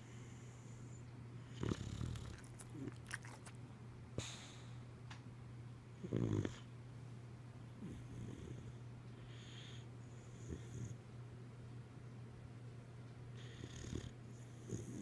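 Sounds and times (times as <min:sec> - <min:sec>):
dog snoring: 0:00.0 - 0:03.4, 0:06.0 - 0:06.7, 0:07.8 - 0:11.0, 0:13.4 - 0:15.0
dog breathing: 0:07.9 - 0:11.0.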